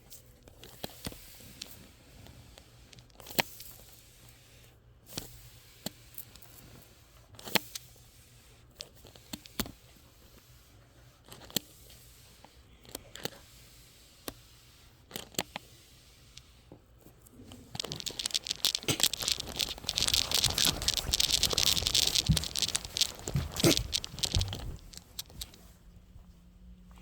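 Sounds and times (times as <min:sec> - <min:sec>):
small clicks and taps: 0:17.7 - 0:25.7.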